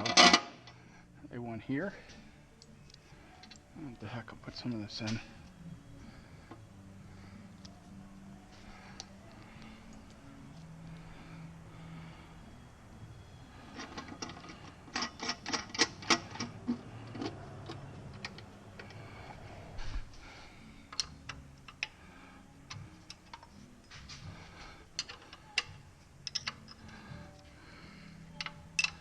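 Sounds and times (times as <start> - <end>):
hand tools clicking on bolts: 25.0 - 26.9, 28.4 - 29.0.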